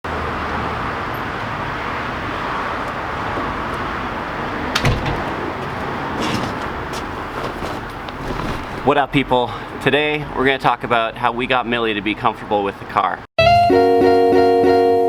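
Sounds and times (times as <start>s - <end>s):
car door shutting: 4.8s - 8.9s.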